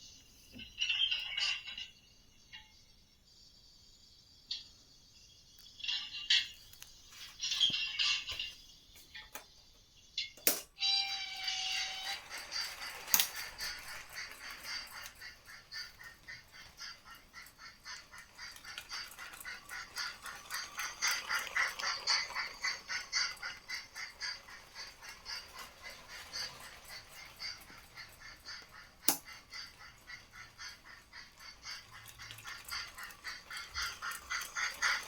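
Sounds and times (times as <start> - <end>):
rapid rhythmic pulsing: 12.0 - 35.0.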